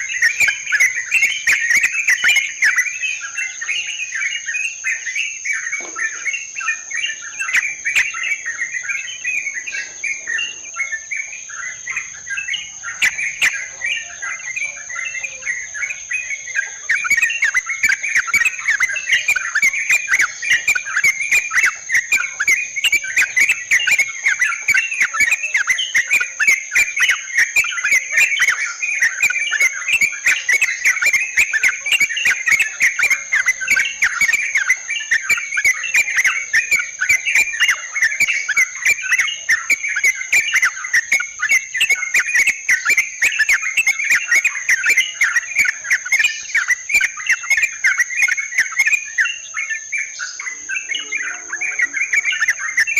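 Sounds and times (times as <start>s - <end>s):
birds chattering: 0.0s - 52.9s
high insect drone: 0.0s - 52.9s.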